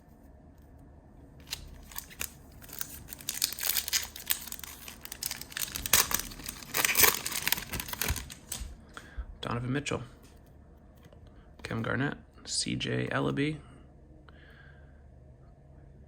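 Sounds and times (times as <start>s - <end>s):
card pack wrapper crinkling: 1.4s - 8.8s.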